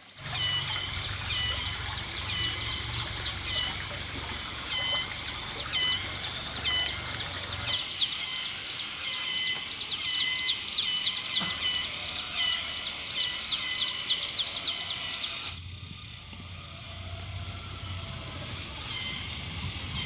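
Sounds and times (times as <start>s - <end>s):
bird chirping: 0.0s - 15.6s.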